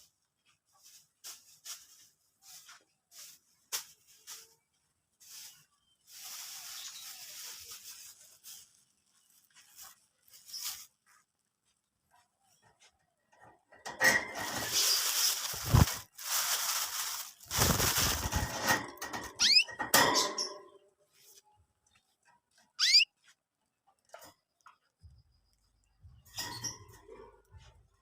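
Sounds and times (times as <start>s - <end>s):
canary rising chirps: 19.3s - 19.8s, 22.8s - 23.1s
young canaries scratchy calls: 19.3s - 19.8s, 22.8s - 23.1s.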